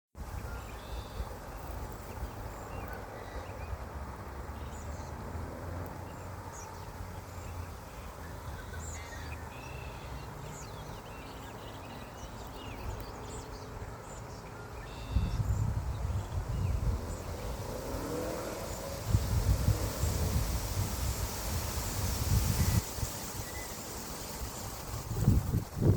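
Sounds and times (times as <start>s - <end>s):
small birds chirping and whistling: 6.6s - 25.9s
wind rumbling on microphone: 15.0s - 25.9s.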